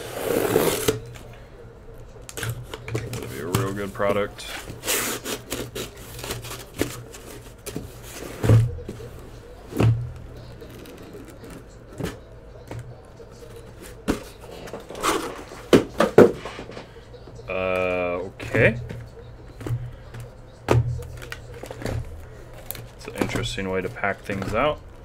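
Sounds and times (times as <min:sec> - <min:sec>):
cardboard packaging clicks and taps: 0:18.8 - 0:23.5.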